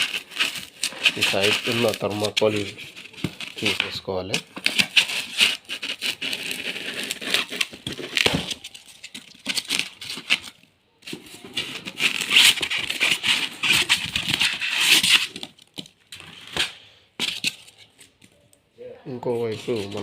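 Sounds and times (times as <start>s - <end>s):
polystyrene rubbing and crackling: 0.0s - 10.6s, 11.4s - 15.6s, 19.3s - 20.0s.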